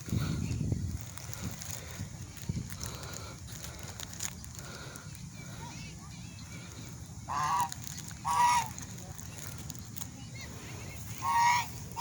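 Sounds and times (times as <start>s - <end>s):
swan honking: 7.2s - 8.8s, 11.1s - 12.0s.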